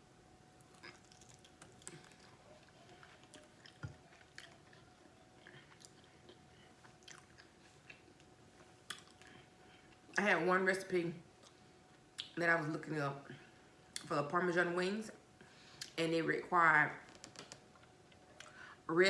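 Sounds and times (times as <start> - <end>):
person chewing: 0.6 - 10.0.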